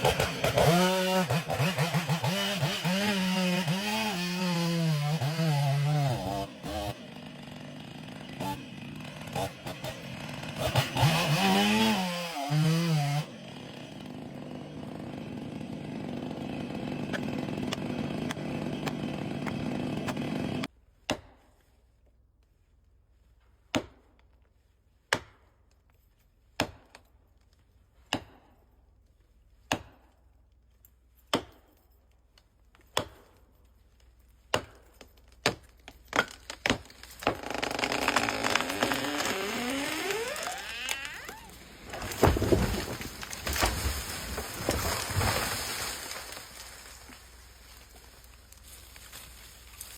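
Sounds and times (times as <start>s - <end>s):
chainsaw revving: 0.0s - 20.7s, 37.2s - 47.2s.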